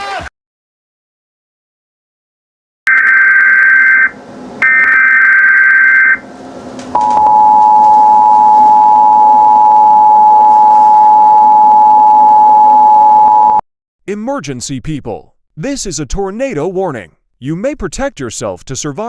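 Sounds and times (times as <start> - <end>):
two-tone attention signal: 2.9 - 6.2, 7.0 - 13.6.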